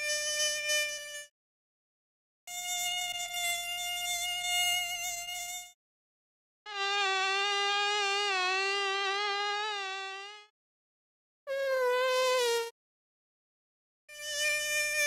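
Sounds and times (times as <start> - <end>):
mosquito buzzing: 0.0 - 1.3, 2.5 - 5.8, 6.7 - 10.5, 11.5 - 12.8, 14.1 - 15.0.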